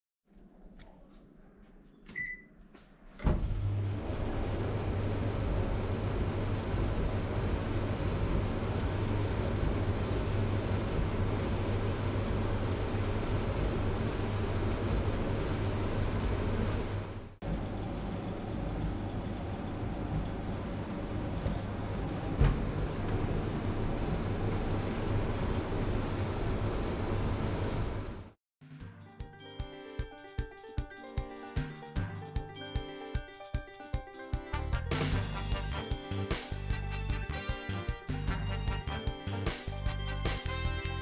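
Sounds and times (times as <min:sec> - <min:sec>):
clothes dryer running: 0:03.1 - 0:28.4, 0:33.9 - 0:41.0.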